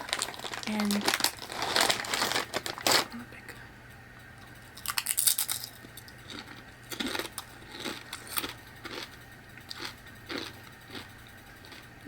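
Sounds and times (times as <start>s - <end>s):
plastic chip bag crinkling: 0.0s - 3.2s, 4.8s - 9.0s.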